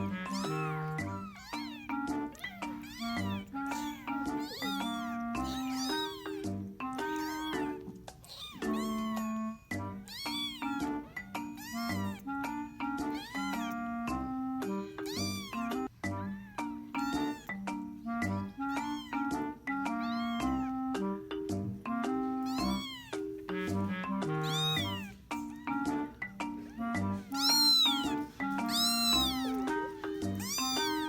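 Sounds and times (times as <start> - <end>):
cat meowing: 0.0 - 20.9, 22.4 - 23.4, 24.4 - 31.0
background music with bass: 19.4 - 22.7.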